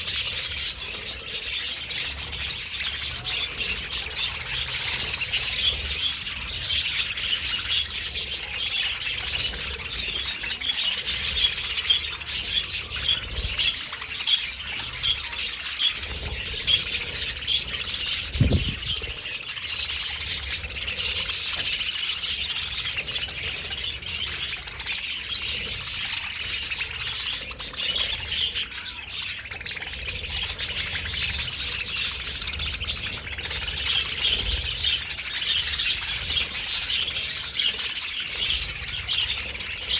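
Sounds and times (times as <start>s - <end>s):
budgies chirping: 0.0s - 39.9s
low thud: 18.4s - 19.1s.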